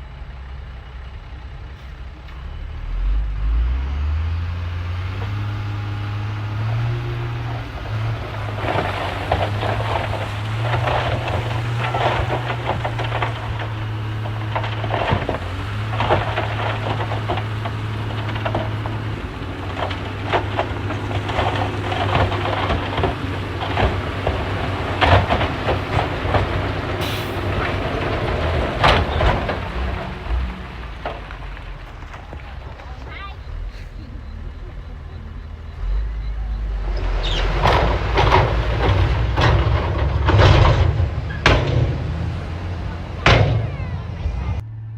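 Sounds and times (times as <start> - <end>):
bulldozer diesel engine running: 0.0 - 44.9
metallic clanks from tracks: 35.4 - 44.5.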